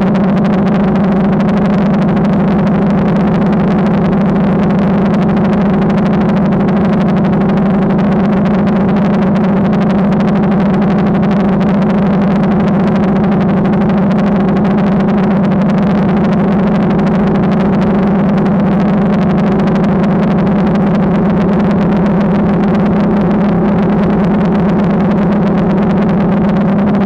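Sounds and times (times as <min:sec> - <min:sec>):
drone propellers buzzing: 0:00.0 - 0:27.0.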